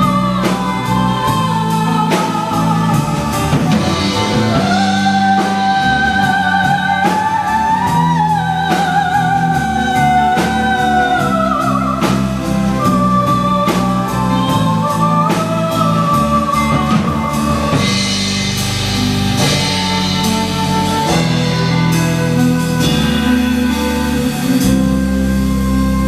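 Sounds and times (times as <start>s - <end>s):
instrumental band music: 0.0s - 26.0s.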